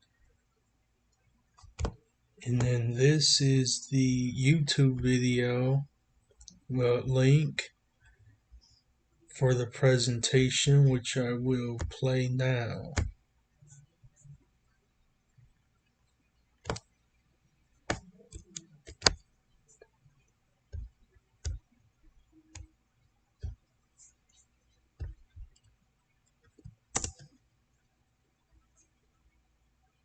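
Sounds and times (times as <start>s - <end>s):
computer mouse clicks: 16.6s - 16.9s, 17.9s - 19.2s, 25.0s - 27.4s.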